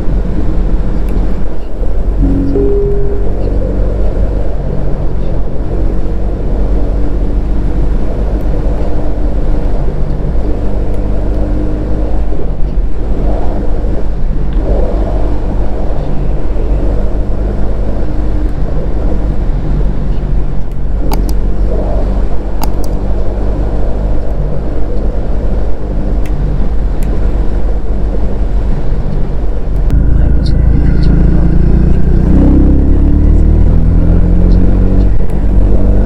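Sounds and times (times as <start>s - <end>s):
motorcycle engine running: 0.0s - 12.2s, 26.8s - 36.0s.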